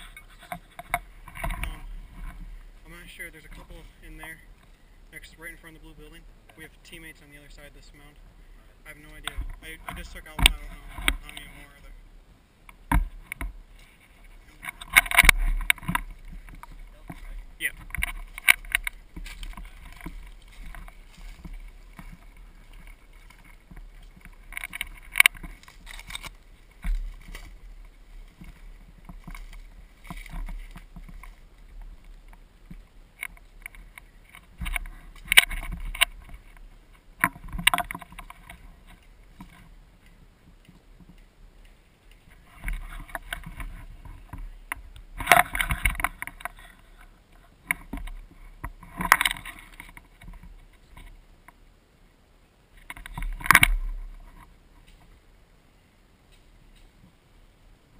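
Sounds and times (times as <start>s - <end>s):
rifle and gear rustling: 12.9s - 51.2s.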